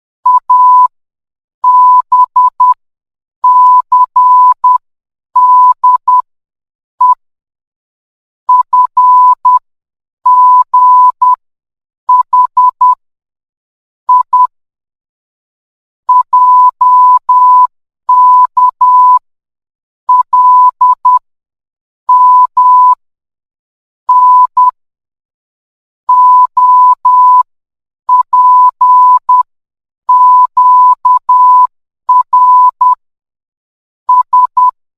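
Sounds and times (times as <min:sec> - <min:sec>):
morse code beeps: 0:00.3 - 0:00.9, 0:01.6 - 0:02.8, 0:03.4 - 0:04.8, 0:05.4 - 0:06.2, 0:07.0 - 0:07.2, 0:08.5 - 0:09.6, 0:10.3 - 0:11.4, 0:12.1 - 0:13.0, 0:14.1 - 0:14.5, 0:16.1 - 0:19.2, 0:20.1 - 0:21.2, 0:22.1 - 0:23.0, 0:24.1 - 0:24.8, 0:26.1 - 0:27.5, 0:28.1 - 0:29.5, 0:30.1 - 0:33.0, 0:34.1 - 0:34.8.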